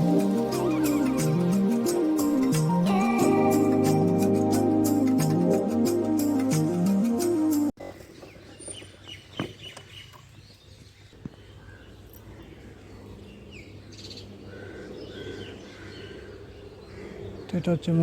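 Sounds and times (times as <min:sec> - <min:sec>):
background music: 0:00.0 - 0:07.7
birds chirping: 0:00.0 - 0:18.0.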